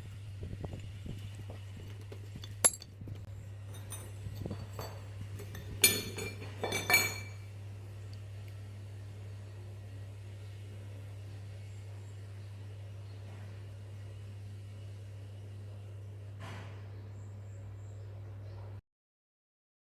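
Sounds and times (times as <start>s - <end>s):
steady low hum: 0.0s - 18.8s
metal parts clinking: 2.4s - 2.9s.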